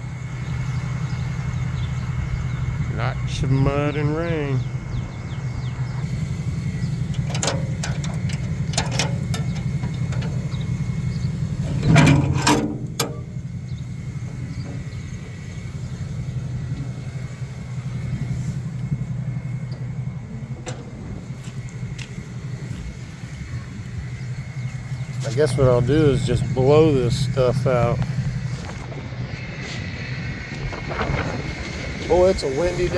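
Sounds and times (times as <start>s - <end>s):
vehicle engine idling: 0.0s - 32.9s
knocks and clatters: 7.0s - 15.4s, 18.7s - 22.4s.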